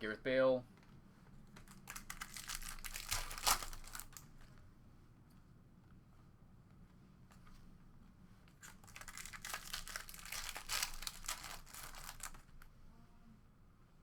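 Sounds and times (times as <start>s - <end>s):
card pack wrapper tearing: 1.6s - 4.3s, 8.6s - 12.5s.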